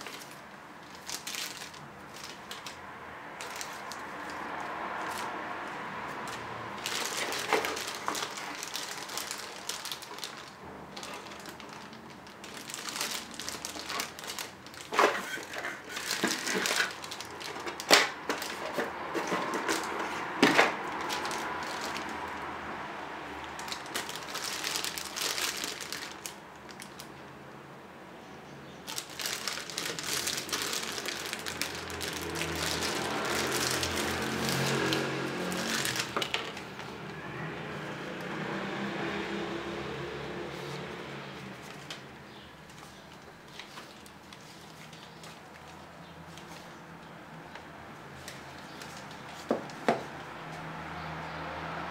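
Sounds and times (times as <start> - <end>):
packaging crinkling and rustling: 0.0 - 2.8, 3.4 - 5.4, 6.2 - 22.4, 23.5 - 27.2, 28.8 - 37.0, 40.6 - 50.1.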